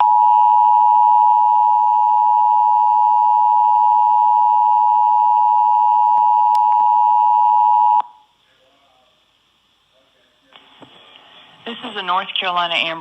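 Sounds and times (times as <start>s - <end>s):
two-tone alarm signal: 0.0s - 8.2s.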